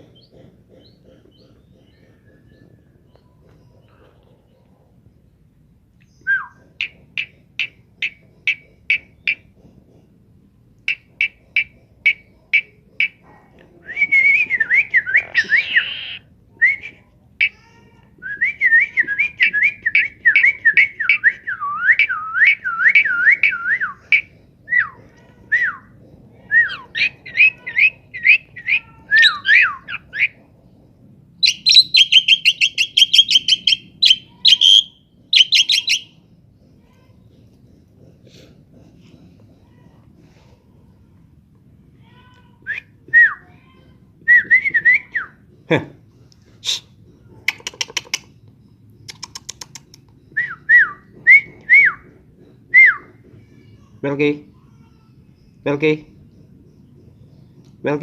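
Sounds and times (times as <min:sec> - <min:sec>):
bird whistling and chattering: 0:06.1 - 0:09.5, 0:13.8 - 0:17.5, 0:18.2 - 0:30.4, 0:31.4 - 0:36.2, 0:46.6 - 0:48.3, 0:49.0 - 0:53.2.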